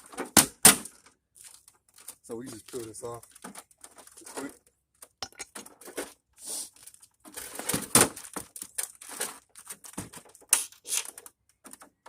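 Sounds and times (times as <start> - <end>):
plastic cracking and creaking: 0.0 - 12.0.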